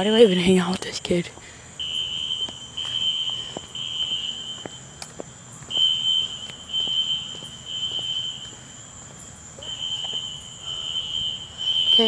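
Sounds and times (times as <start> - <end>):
fire alarm beeping: 1.8 - 5.0, 5.7 - 8.8, 9.6 - 12.0.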